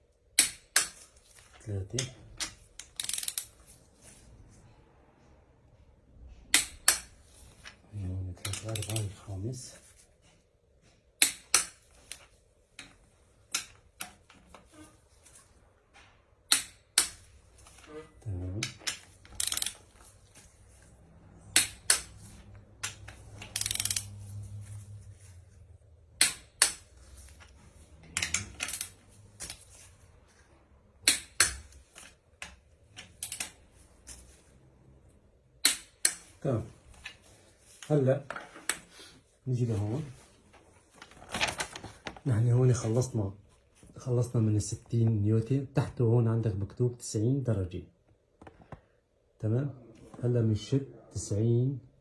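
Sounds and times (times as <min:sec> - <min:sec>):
torque wrench clicking: 0:02.4 - 0:03.5, 0:18.9 - 0:19.8, 0:22.8 - 0:24.1.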